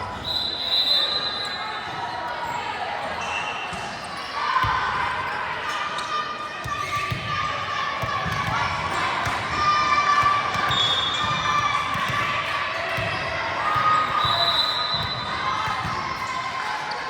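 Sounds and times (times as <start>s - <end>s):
sneakers squeaking on court: 2.4s - 4.7s
volleyballs bouncing and struck: 6.7s - 16.2s.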